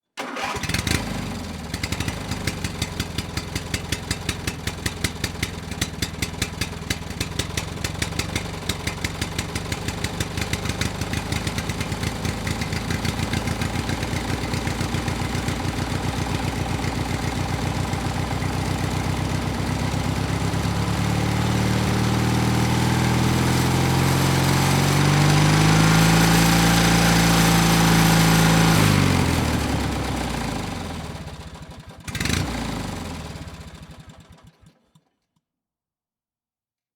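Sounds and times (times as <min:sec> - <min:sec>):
two-stroke engine running and revving: 0:00.5 - 0:34.6.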